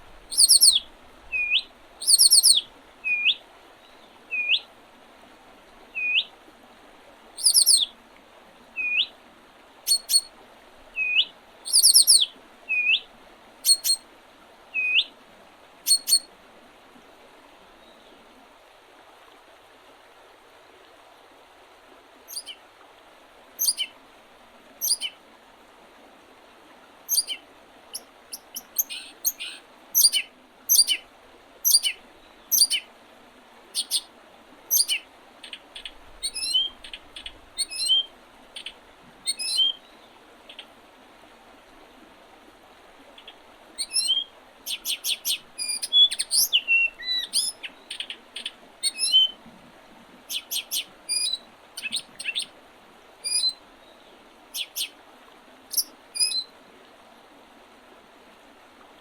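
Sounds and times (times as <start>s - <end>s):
faint background hiss: 0.0s - 59.0s
songbirds chirping: 0.1s - 4.7s, 7.4s - 8.0s, 10.9s - 14.0s, 22.3s - 22.6s, 23.6s - 24.0s, 24.8s - 25.2s, 27.1s - 32.9s, 33.7s - 34.1s, 43.1s - 49.4s, 50.3s - 52.5s, 53.3s - 55.0s.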